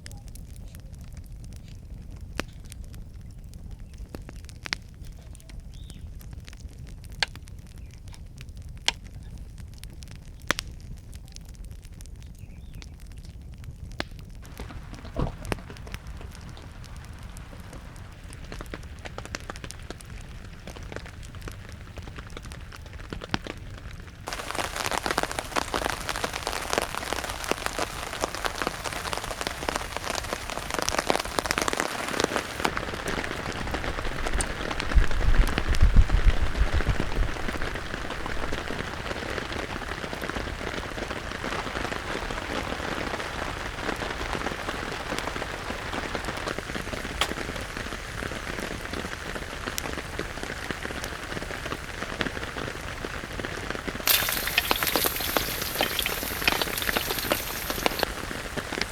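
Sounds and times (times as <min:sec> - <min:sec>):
raindrops ticking on a surface: 0:00.0 - 0:58.9
heavy rain falling: 0:14.4 - 0:19.4, 0:24.3 - 0:58.9.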